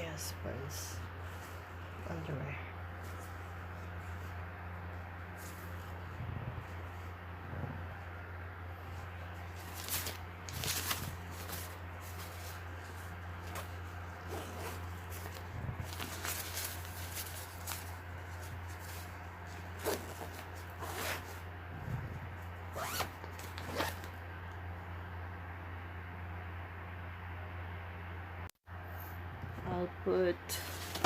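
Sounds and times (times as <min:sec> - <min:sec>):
steady low hum: 0:00.0 - 0:31.0
zipper pulled: 0:13.4 - 0:17.8, 0:19.6 - 0:24.1.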